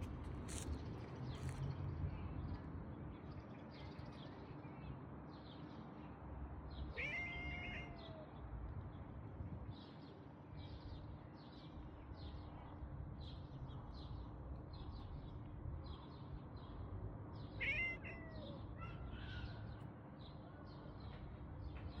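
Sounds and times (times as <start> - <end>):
cat meowing: 7.0 - 8.3, 17.6 - 18.6.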